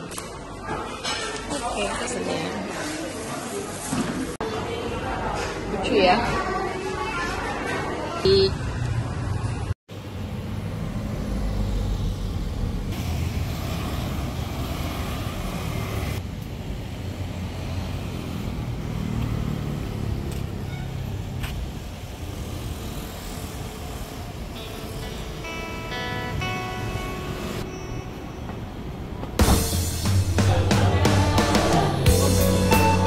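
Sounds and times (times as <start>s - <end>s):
road traffic rumble: 8.3s - 33.0s.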